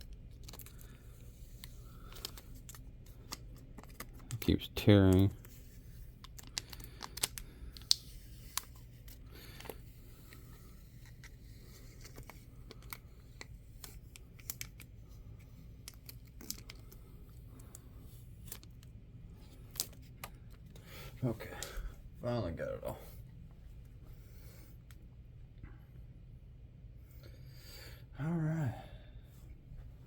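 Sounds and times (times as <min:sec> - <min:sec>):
plastic film peeling: 0:00.0 - 0:15.0, 0:15.8 - 0:20.8.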